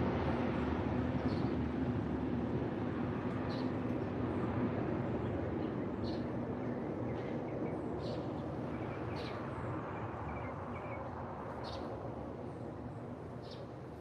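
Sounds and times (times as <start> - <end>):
songbirds chirping: 5.2 - 11.9, 13.4 - 13.8.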